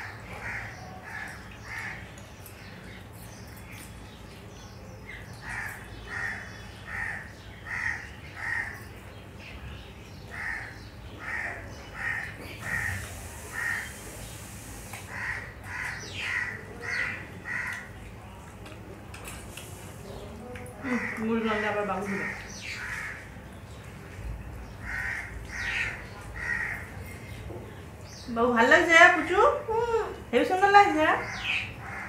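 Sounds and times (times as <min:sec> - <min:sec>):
bird calling: 0:10.3 - 0:17.9.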